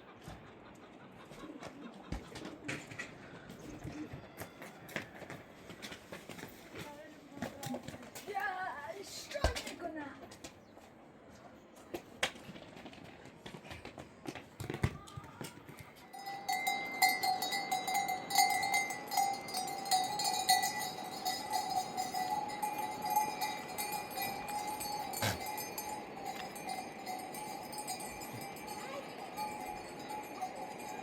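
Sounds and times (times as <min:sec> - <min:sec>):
goat bells clanking: 0:15.7 - 0:31.0.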